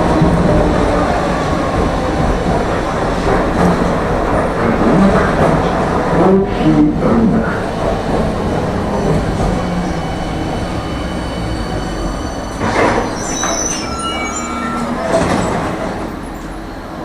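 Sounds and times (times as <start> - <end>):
tram wheels and motors rumbling: 0.0 - 17.0
high wheel squeals: 8.7 - 17.0.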